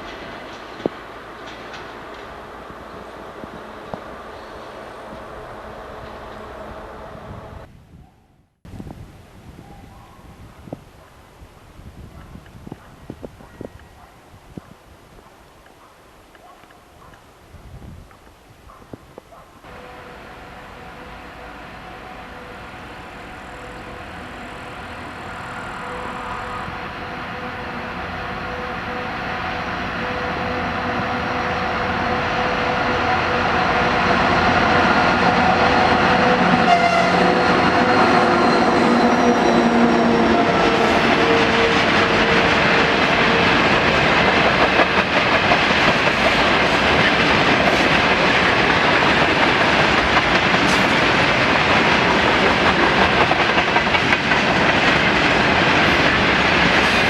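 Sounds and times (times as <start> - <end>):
diesel locomotive engine drone: 0.0 - 7.7, 19.7 - 57.0.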